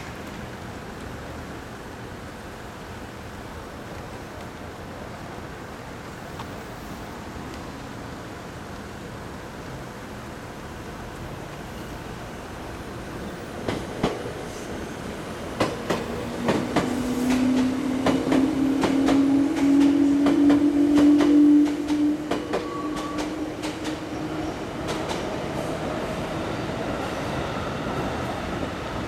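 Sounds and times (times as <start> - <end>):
train wheels clacking on rail joints: 13.6 - 14.3, 15.6 - 24.1
droning train tone: 14.5 - 29.0.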